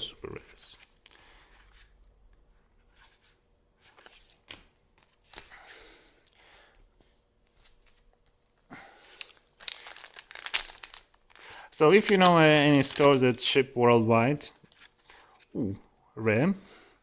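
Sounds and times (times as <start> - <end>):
trading cards rustling and tapping: 9.1 - 13.4.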